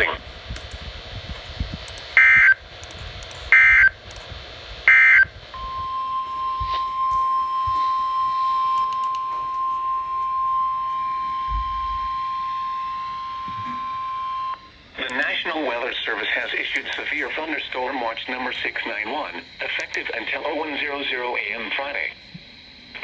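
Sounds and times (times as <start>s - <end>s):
digital data bursts: 1.6s - 4.2s, 4.8s - 6.9s
steady warning alarm tone: 1.9s - 4.2s, 4.8s - 23.0s.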